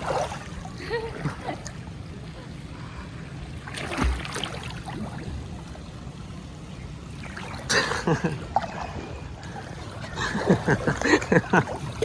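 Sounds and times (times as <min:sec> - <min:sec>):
water splashing: 0:00.0 - 0:01.6, 0:03.6 - 0:06.0, 0:07.1 - 0:12.0
water sloshing and gurgling: 0:00.0 - 0:12.0.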